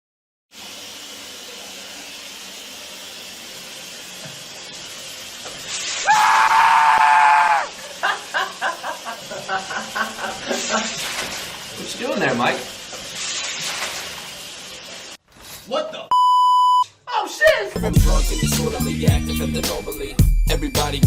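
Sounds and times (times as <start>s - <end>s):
steady hiss: 0.6s - 15.2s
person screaming: 6.0s - 7.8s.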